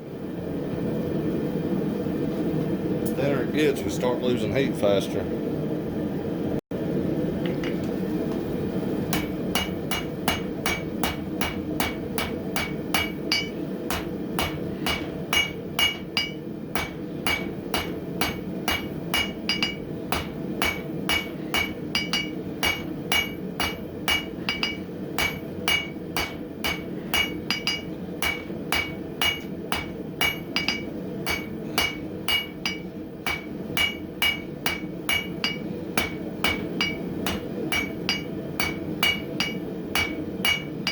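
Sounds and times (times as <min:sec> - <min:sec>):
hammer striking steel on anvil: 0:09.1 - 0:40.9.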